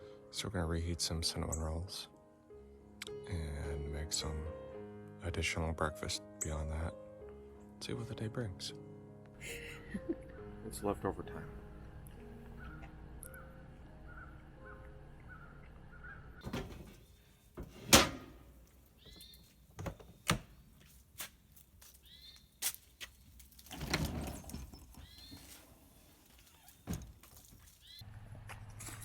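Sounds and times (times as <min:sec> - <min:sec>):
bird calling: 0:12.5 - 0:16.5, 0:19.0 - 0:20.3.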